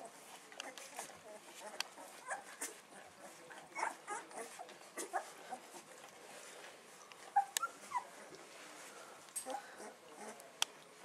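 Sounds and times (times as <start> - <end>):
puppies squeaking and crying: 0.1 - 5.9, 6.9 - 8.3.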